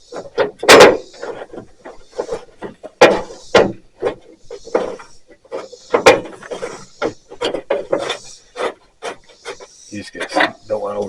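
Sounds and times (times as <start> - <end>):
metal parts and hand tools knocking: 0.0 - 9.6.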